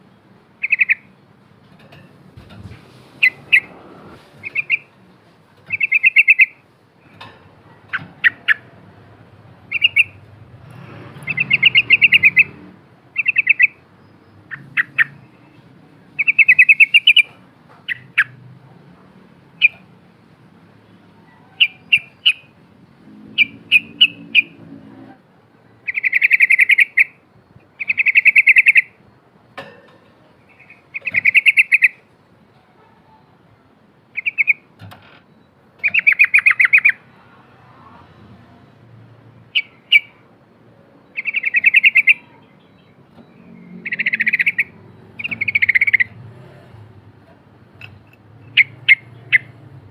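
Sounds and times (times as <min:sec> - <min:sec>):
bulbul chattering song: 0:00.5 - 0:01.2, 0:03.2 - 0:03.8, 0:04.4 - 0:05.0, 0:05.7 - 0:10.4, 0:11.2 - 0:18.4, 0:19.6 - 0:19.9, 0:20.9 - 0:22.6, 0:23.4 - 0:24.6, 0:25.8 - 0:29.1, 0:30.3 - 0:32.2, 0:34.1 - 0:34.8, 0:35.8 - 0:37.3, 0:38.1 - 0:46.4, 0:47.6 - 0:49.9.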